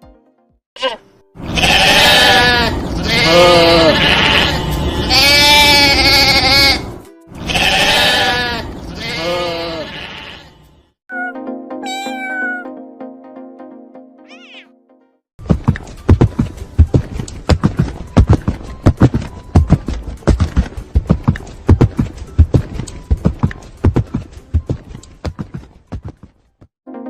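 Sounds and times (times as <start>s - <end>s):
goat bleating: 0.8s - 12.6s, 14.3s - 14.7s.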